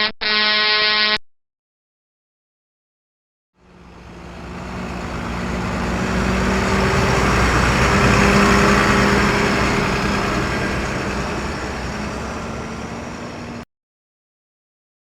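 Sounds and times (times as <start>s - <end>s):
road noise: 3.6s - 13.6s
truck engine approaching: 3.6s - 13.6s.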